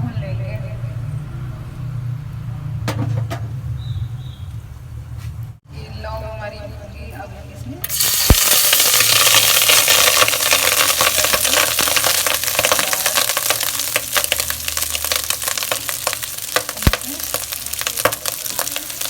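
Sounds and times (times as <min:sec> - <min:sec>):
ghee sizzling in a pan: 0:07.9 - 0:19.0
sharp pops: 0:08.2 - 0:19.0.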